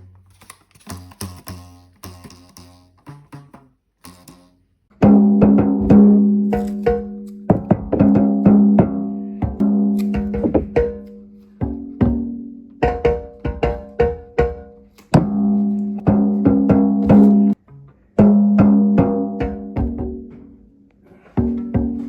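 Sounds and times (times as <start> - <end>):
twangy plucked string notes: 5.0 - 20.7.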